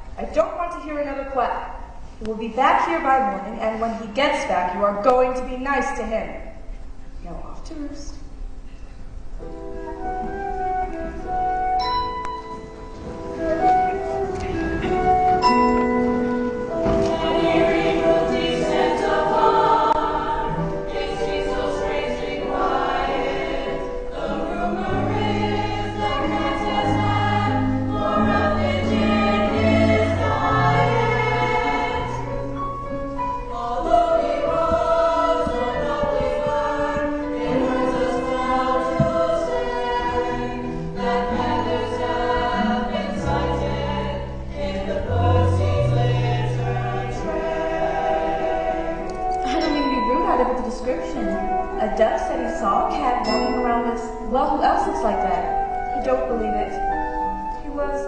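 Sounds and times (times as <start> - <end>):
instrumental accompaniment: 8.8 - 58.0
group of voices singing: 16.7 - 32.4, 33.3 - 49.7.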